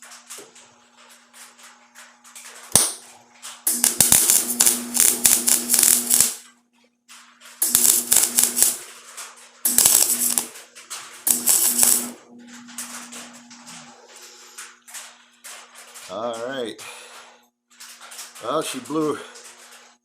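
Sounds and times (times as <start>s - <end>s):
welding arc crackling: 0.0s - 20.0s
steady low hum: 9.7s - 15.6s.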